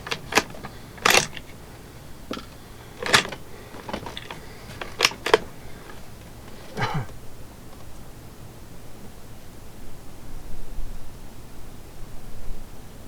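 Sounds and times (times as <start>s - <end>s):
sharp clicks and knocks: 0.0s - 7.2s.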